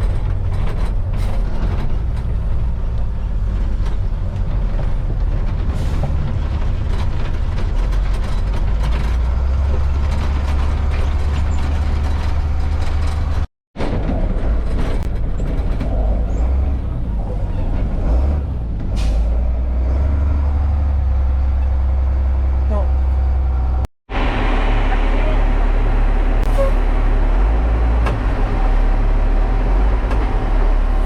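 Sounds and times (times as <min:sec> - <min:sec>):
heavy farm machinery engine drone: 0:19.8 - 0:31.0.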